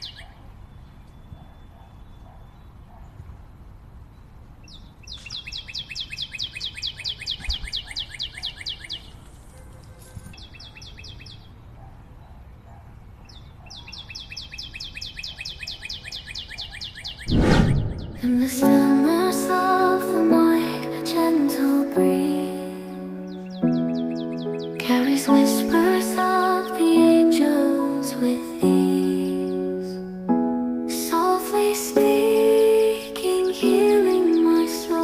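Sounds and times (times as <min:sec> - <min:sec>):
loud whoosh: 0:17.2 - 0:18.8
music: 0:18.4 - 0:35.0.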